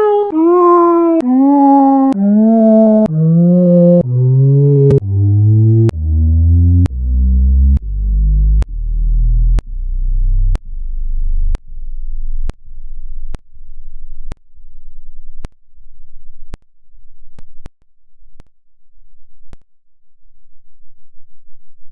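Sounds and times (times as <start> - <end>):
warped cat meow deep buzz: 0.0 - 5.0
click: 15.4 - 15.6, 19.5 - 19.7.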